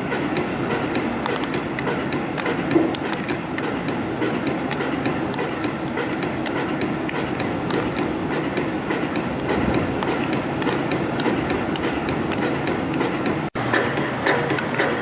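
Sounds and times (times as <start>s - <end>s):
sharp machine clicks: 0.0s - 15.0s
loud machine knock: 7.8s - 15.0s.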